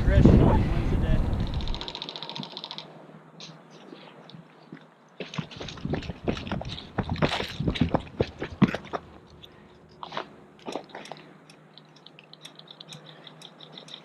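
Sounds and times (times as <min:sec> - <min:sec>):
footsteps on gravel: 0:04.7 - 0:09.3.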